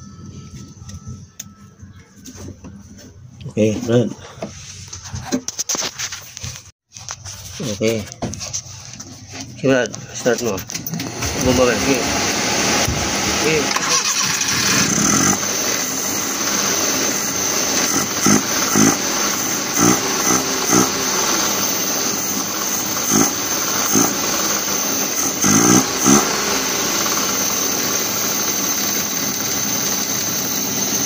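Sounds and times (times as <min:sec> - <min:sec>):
engine cranking on starter: 0:10.7 - 0:31.0.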